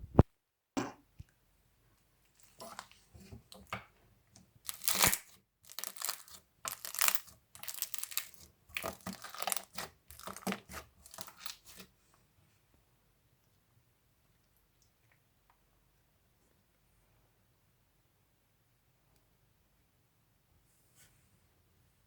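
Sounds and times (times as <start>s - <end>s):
slime squishing: 4.6s - 11.9s.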